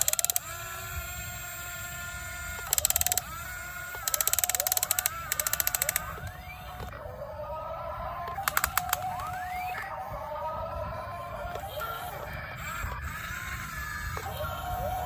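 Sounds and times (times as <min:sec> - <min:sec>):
rapid gear clicking: 0:00.0 - 0:00.6, 0:02.5 - 0:06.4, 0:08.4 - 0:09.5
small electric motors whining: 0:00.0 - 0:15.0.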